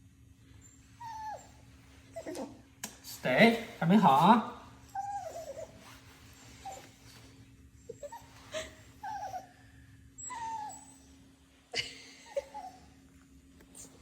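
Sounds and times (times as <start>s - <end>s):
dog whining: 0.6s - 2.7s, 4.8s - 11.4s, 12.2s - 13.1s.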